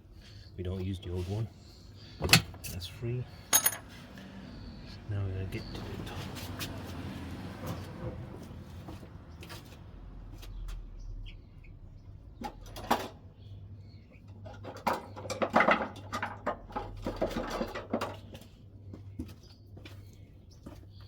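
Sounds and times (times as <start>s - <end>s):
tools and metal parts clattering: 2.2s - 4.0s, 12.4s - 13.3s, 14.2s - 18.6s.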